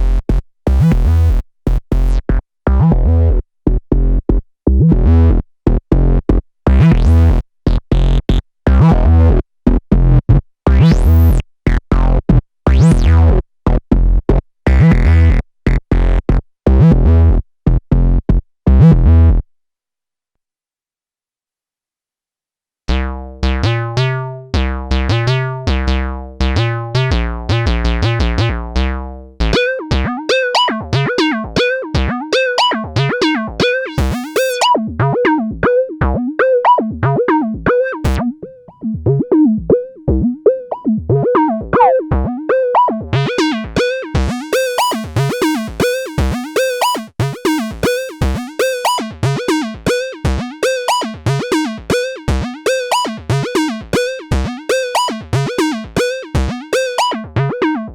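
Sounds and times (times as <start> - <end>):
buzzy synth bass pattern: 0.0 - 3.4, 4.0 - 9.4, 10.0 - 17.4, 22.9 - 57.9
plucked synth notes: 10.7 - 13.4, 22.9 - 57.9.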